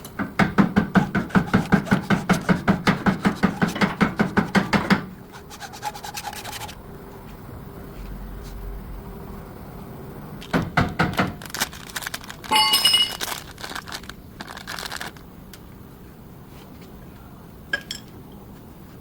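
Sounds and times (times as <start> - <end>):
metal tools clattering: 12.5 - 13.2
ringing metallic clink: 12.5 - 13.2.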